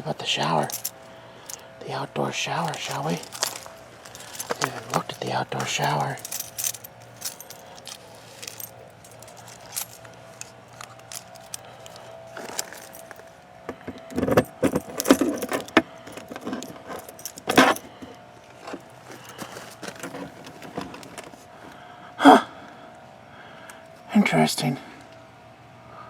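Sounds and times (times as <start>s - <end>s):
faint steady hum: 0.0s - 26.0s
keys jangling: 0.2s - 1.7s, 2.5s - 21.4s
clicks and rattles: 2.6s - 21.4s.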